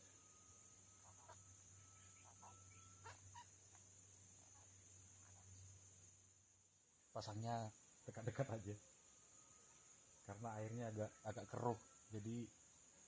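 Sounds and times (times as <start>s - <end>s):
thin whistle-like tone: 0.0s - 3.3s, 9.1s - 12.5s
crickets and insects droning: 0.0s - 13.0s.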